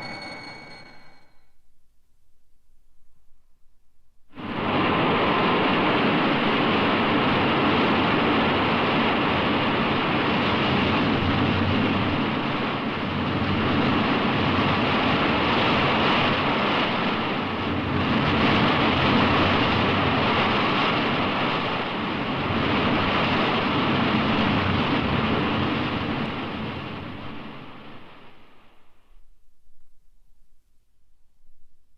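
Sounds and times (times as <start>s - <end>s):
rushing wind-like noise: 4.3s - 29.2s.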